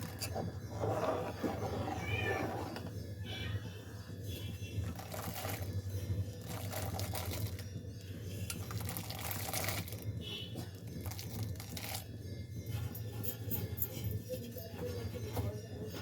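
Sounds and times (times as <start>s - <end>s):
metal spoon scraping a pot: 0.0s - 3.0s.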